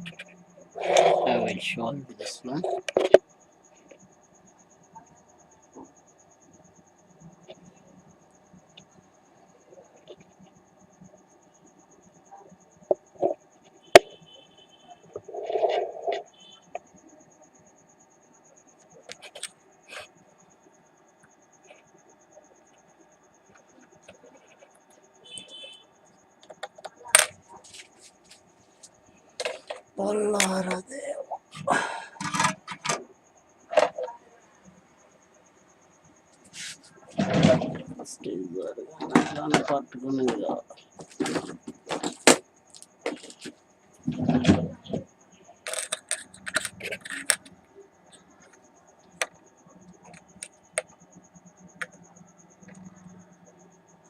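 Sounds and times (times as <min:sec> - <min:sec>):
cricket chirping: 0:00.0 - 0:54.0
small tools clicking and tapping: 0:45.6 - 0:49.4.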